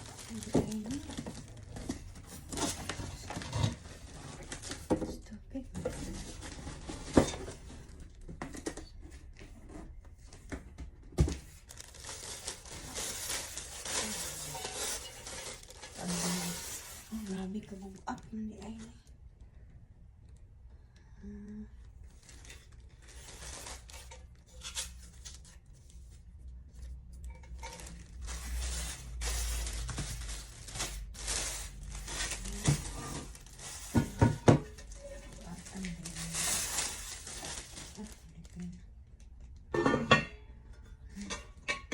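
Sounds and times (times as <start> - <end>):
packaging rustling and tearing: 0.0 - 5.2, 5.8 - 8.8, 11.3 - 18.3, 22.2 - 25.6, 27.5 - 38.6.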